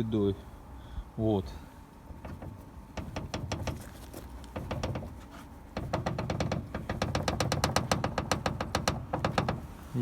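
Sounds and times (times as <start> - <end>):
car hood knocking: 2.2 - 3.9, 4.5 - 9.7.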